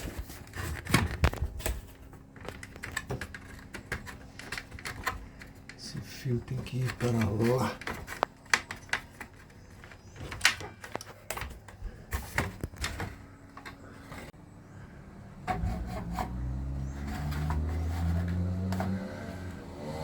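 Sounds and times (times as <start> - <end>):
plastic parts clicking and rubbing: 0.0 - 14.3.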